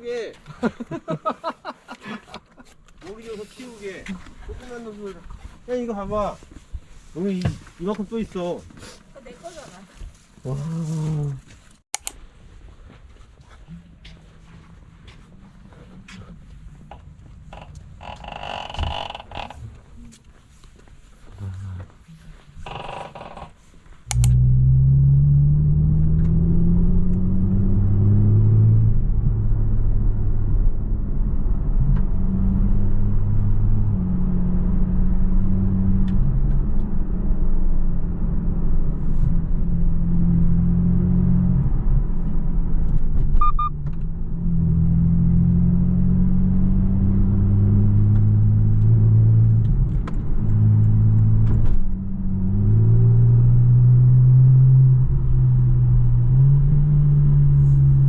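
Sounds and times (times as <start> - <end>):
car engine accelerating: 24.1 - 58.0
short double beep: 43.4 - 43.8.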